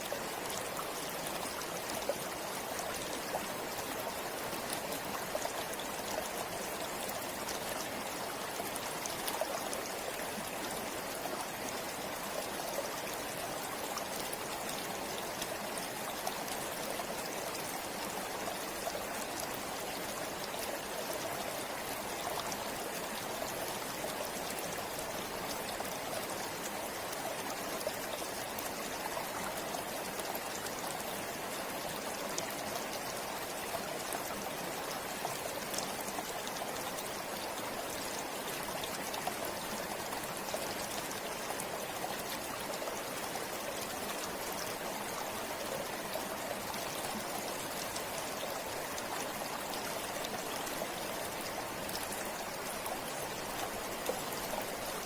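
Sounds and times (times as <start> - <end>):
stream flowing over rocks: 0.0 - 55.0.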